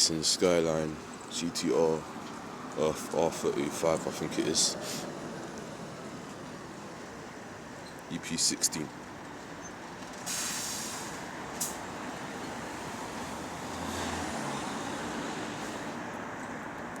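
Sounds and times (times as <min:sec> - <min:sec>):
street traffic: 0:00.0 - 0:17.0
bus air brake hiss: 0:04.8 - 0:05.2, 0:10.2 - 0:11.9, 0:14.8 - 0:16.0.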